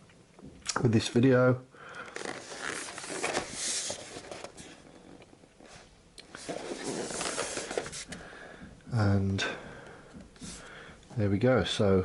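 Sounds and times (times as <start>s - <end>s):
cardboard box rustling and scraping: 2.3s - 4.8s, 6.4s - 8.2s.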